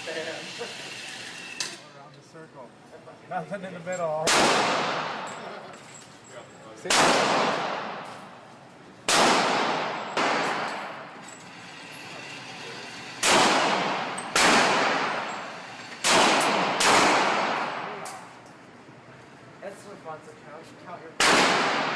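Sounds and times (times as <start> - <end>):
pistol shots echoing: 4.2 - 5.3, 6.8 - 8.1, 9.1 - 11.0, 13.2 - 15.4, 16.0 - 18.0, 21.2 - 21.9.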